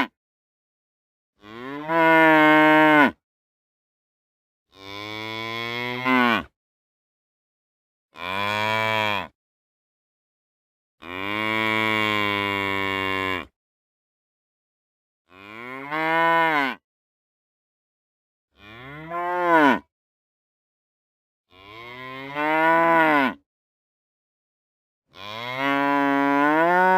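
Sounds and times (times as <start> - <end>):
cow mooing: 1.4 - 3.2, 4.7 - 6.5, 11.0 - 13.5, 15.3 - 16.8, 18.6 - 19.8, 21.5 - 23.4, 25.1 - 26.9.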